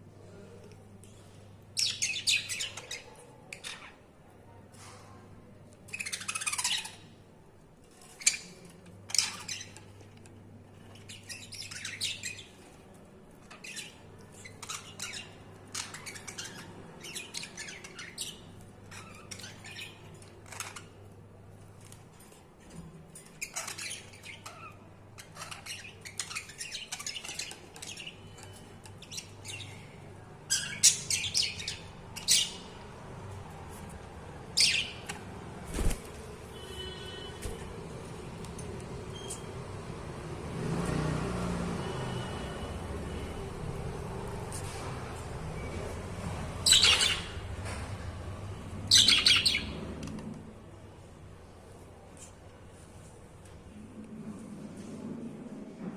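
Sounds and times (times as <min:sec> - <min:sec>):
budgerigars chirping and squawking: 0:01.8 - 0:04.0, 0:05.9 - 0:07.0, 0:11.0 - 0:12.7, 0:13.4 - 0:21.0, 0:23.4 - 0:29.9, 0:30.5 - 0:32.8, 0:34.6 - 0:35.1, 0:46.6 - 0:47.5, 0:48.9 - 0:49.8.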